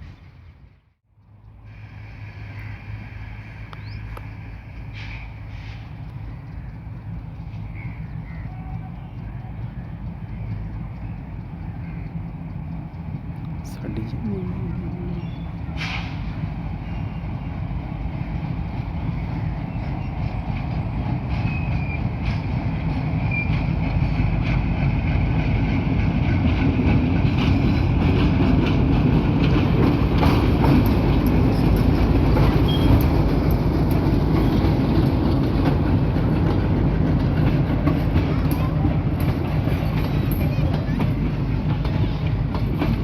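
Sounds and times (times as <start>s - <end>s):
train rumbling on tracks: 0.0s - 43.0s
wheels clicking over rail joints: 3.6s - 43.0s.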